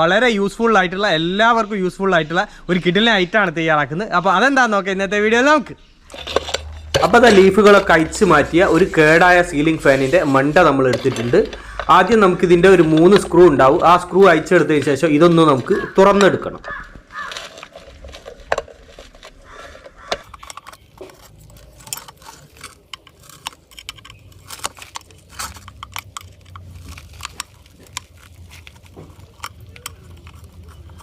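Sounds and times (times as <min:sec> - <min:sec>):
screws being loosened: 0:06.1 - 0:15.9, 0:17.4 - 0:31.0
screwdriver clicking on metal: 0:16.6 - 0:31.0.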